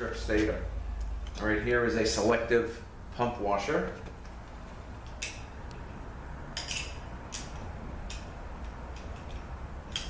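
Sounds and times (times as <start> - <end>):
steady low hum: 0.0 - 10.0
metal parts clinking: 6.6 - 8.3.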